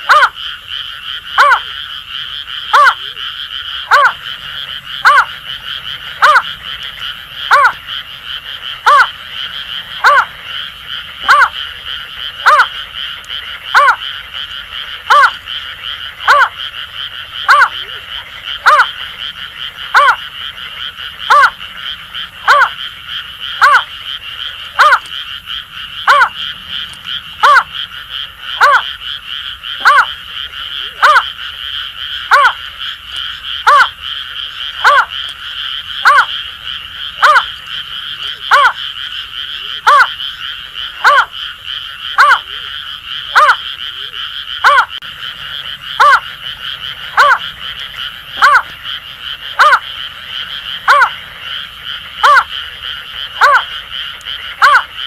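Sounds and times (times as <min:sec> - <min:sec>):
bird hooting calls: 0:00.0 - 0:00.4, 0:01.4 - 0:01.8, 0:02.7 - 0:03.2, 0:03.9 - 0:08.0, 0:08.8 - 0:11.6, 0:12.4 - 0:12.8, 0:13.7 - 0:14.0, 0:15.1 - 0:15.4, 0:16.2 - 0:16.6, 0:17.4 - 0:20.3, 0:21.2 - 0:22.8, 0:23.5 - 0:23.9, 0:24.7 - 0:29.0, 0:29.8 - 0:30.2, 0:30.8 - 0:31.3, 0:32.3 - 0:32.6, 0:33.6 - 0:34.0, 0:34.8 - 0:35.3, 0:36.0 - 0:36.4, 0:37.1 - 0:38.8, 0:39.5 - 0:40.2, 0:40.8 - 0:41.4, 0:42.1 - 0:45.0, 0:45.7 - 0:48.8, 0:49.5 - 0:52.6, 0:53.3 - 0:53.7, 0:54.6 - 0:54.9
frogs chorus: 0:00.0 - 0:55.0.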